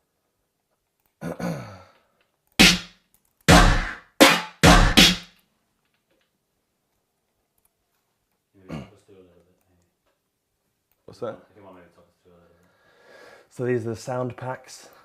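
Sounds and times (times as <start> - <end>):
electronic drum hits: 2.6 - 2.9, 3.5 - 5.2.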